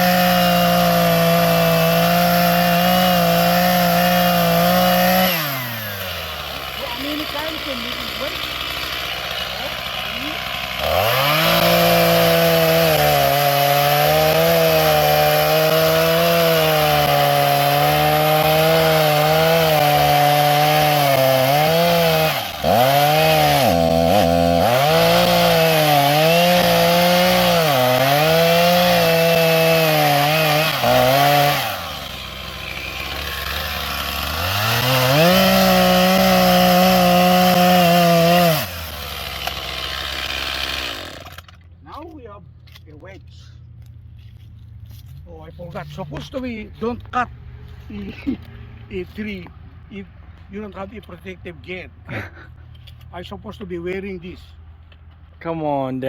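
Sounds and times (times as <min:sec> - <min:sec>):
chainsaw cutting into wood: 0:00.0 - 0:41.7.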